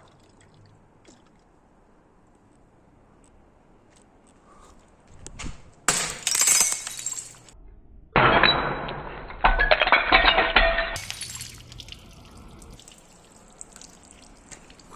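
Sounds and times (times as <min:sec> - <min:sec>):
glass bottles breaking: 0:05.9 - 0:07.6, 0:08.2 - 0:12.7
glass shards clinking: 0:05.9 - 0:07.6, 0:09.4 - 0:11.8.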